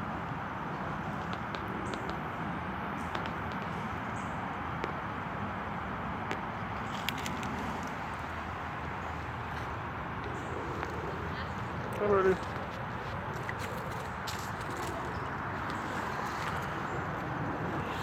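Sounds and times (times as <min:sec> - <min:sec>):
urban traffic noise: 0:00.0 - 0:18.0.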